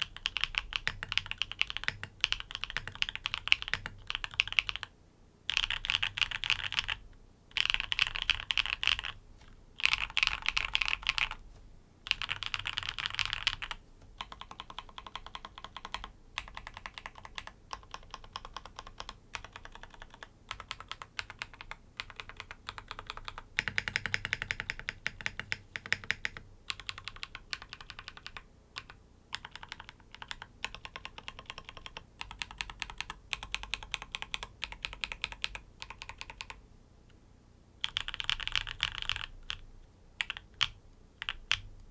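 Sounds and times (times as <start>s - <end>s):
typing on mechanical keyboard: 0.0s - 4.9s, 5.5s - 7.0s, 7.6s - 9.2s, 9.8s - 11.4s, 12.1s - 36.6s, 37.8s - 39.6s, 40.2s - 41.7s.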